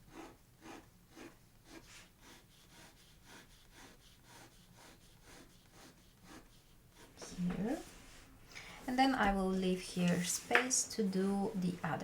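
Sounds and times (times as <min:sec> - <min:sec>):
pencil scratching on paper: 0:00.0 - 0:07.9.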